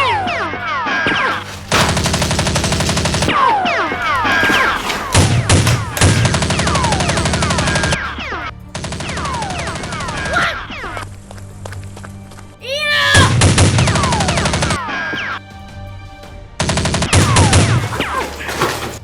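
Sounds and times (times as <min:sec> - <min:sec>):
heavy thumps: 0:01.3 - 0:03.3, 0:03.9 - 0:06.5, 0:17.2 - 0:19.0
background music: 0:05.0 - 0:19.0.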